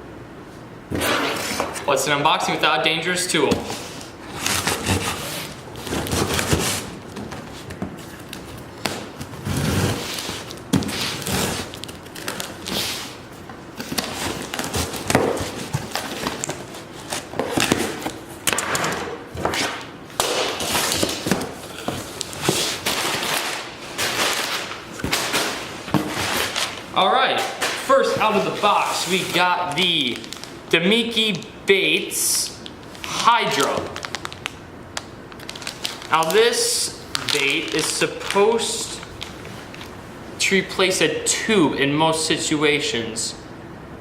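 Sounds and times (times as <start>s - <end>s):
cardboard tearing and rustling: 3.5s - 18.6s, 19.3s - 30.6s, 32.9s - 34.6s, 35.3s - 39.9s.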